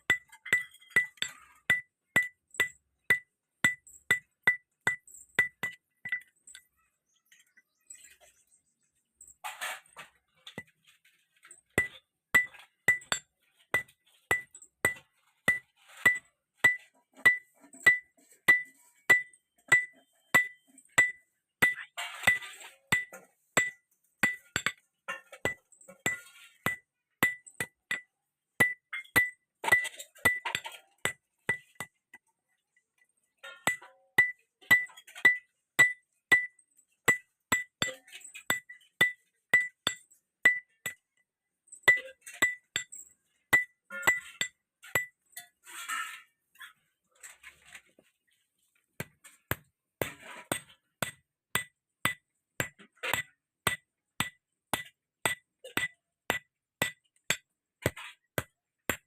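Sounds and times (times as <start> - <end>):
hammer striking steel on anvil: 11.8 - 31.9, 33.4 - 41.0, 41.8 - 45.5, 49.0 - 59.0.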